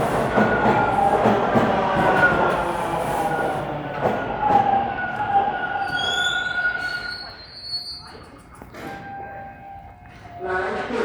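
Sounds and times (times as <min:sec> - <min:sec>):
high squealing wheels: 0:00.0 - 0:08.4
subway train rumbling: 0:00.0 - 0:11.0.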